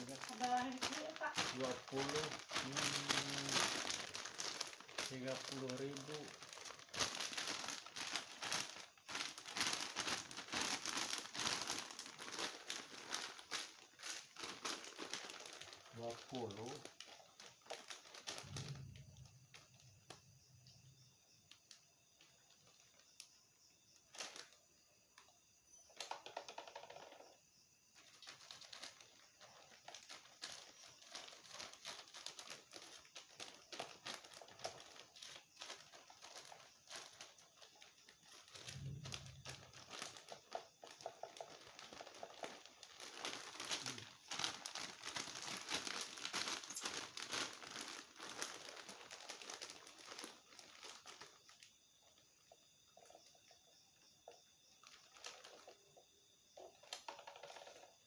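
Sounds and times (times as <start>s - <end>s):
plastic packaging crinkling: 0.0s - 20.1s, 28.0s - 51.6s, 54.8s - 55.8s.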